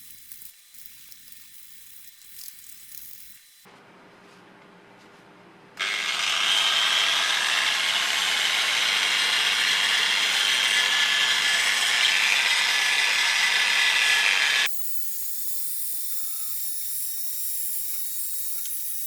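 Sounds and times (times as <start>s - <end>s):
power tool gritty noise: 5.8s - 14.7s.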